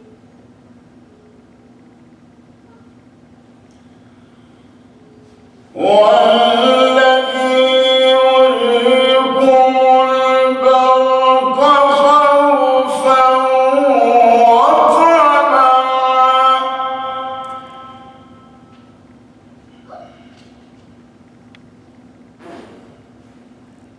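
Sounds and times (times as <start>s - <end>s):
man reciting melodically: 5.7s - 18.6s.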